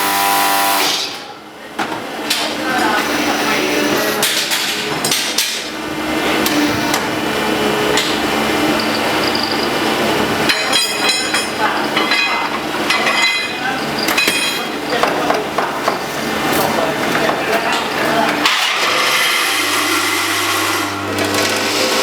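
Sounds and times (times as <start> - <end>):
block press machine running: 0.0 - 22.0
sharp metal clanks: 10.5 - 15.2.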